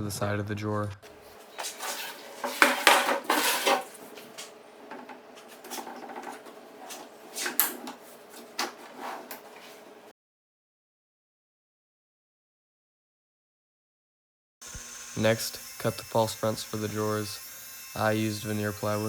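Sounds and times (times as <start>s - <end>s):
metal drawer slides sliding: 1.1s - 10.1s.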